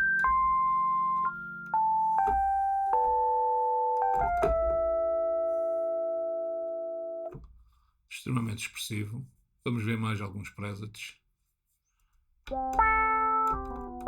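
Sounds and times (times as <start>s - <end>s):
electric piano melody over chords: 0.0s - 7.3s, 12.5s - 14.0s.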